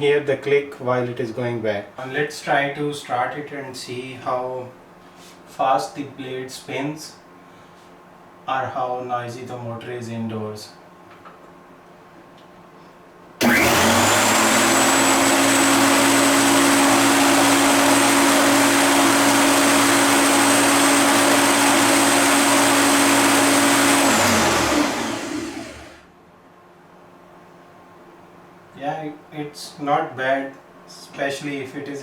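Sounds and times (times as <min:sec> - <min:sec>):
electric lawn mower motor whine: 0:13.4 - 0:26.0.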